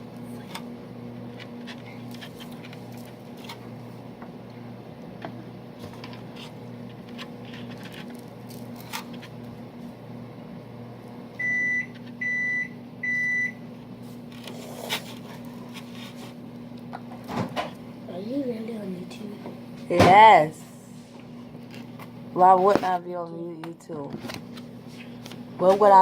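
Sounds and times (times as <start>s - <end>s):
microwave oven humming: 0.0s - 26.0s
high microwave beeps: 11.3s - 13.7s.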